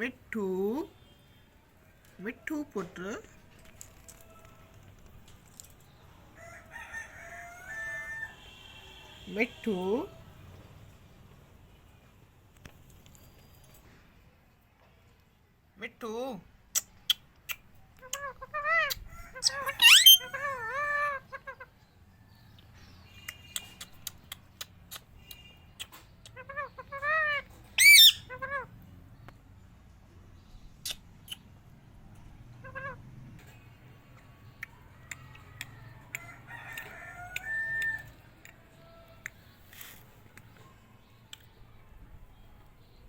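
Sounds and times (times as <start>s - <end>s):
parrots chattering: 17.5s - 21.7s, 25.8s - 28.7s
parrot shriek: 18.5s - 21.2s, 26.5s - 28.5s.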